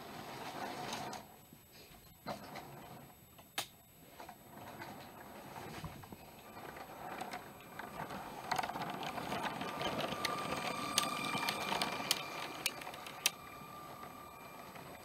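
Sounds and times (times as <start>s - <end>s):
toy train wheels rattling on track: 6.3s - 15.0s
small electric motor whining: 6.4s - 15.0s.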